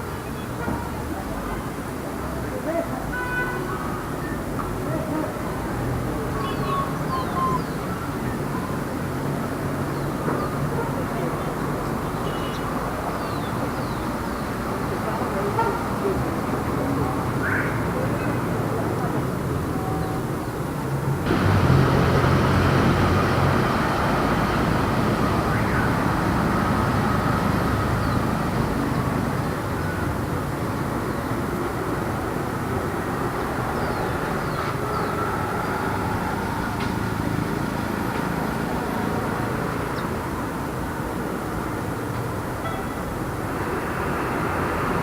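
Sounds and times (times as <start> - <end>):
street traffic: 0.0 - 45.0
vehicle engine passing close: 21.2 - 29.8.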